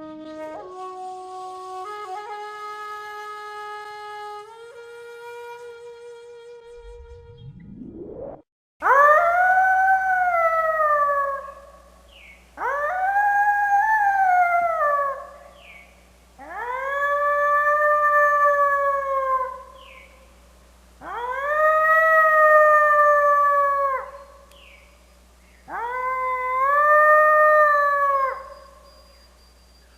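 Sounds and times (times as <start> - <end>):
wolf howling: 8.8 - 11.8, 12.6 - 15.8, 16.4 - 20.1, 21.0 - 24.4, 25.7 - 29.0.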